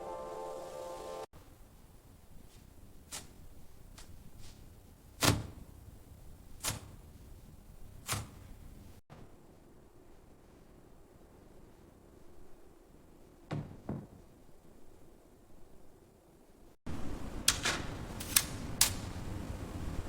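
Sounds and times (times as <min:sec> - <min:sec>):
sharp knocks: 0:13.5 - 0:14.2.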